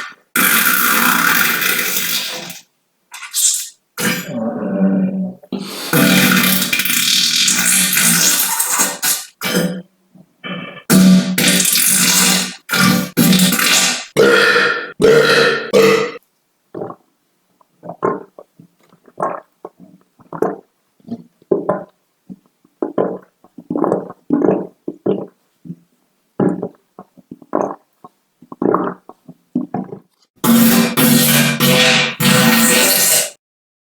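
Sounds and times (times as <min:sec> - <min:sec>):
person farting: 0:00.0 - 0:04.5, 0:05.6 - 0:17.0, 0:17.8 - 0:33.4.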